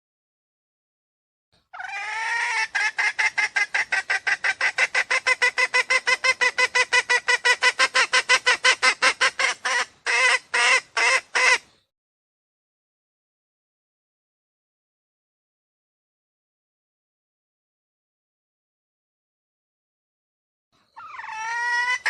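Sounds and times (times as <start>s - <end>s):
junglefowl lure call clucking: 1.7s - 11.7s, 20.9s - 22.0s.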